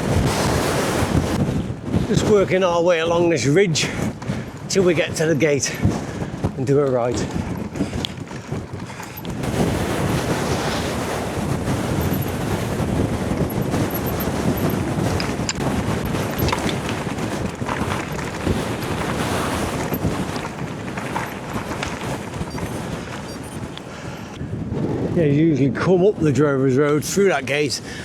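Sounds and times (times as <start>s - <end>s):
wind buffeting microphone: 0.0s - 28.0s
faint bike clicks: 6.1s - 9.4s, 13.4s - 24.4s.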